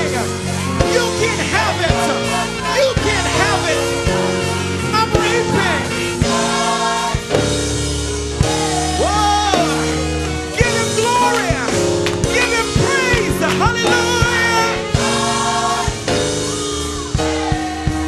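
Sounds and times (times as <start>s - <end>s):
gospel singing with band: 0.0s - 18.0s
low bass notes: 0.0s - 18.0s
drum hits: 5.0s - 18.0s.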